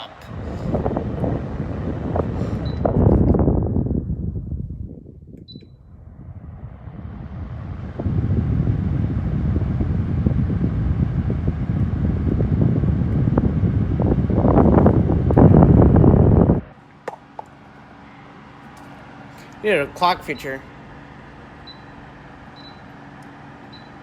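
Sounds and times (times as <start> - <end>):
fan airflow buffeting microphone: 0.0 - 24.0
short fan beep: 2.4 - 3.0, 5.4 - 5.9, 20.1 - 20.7, 21.6 - 23.0, 23.6 - 24.0.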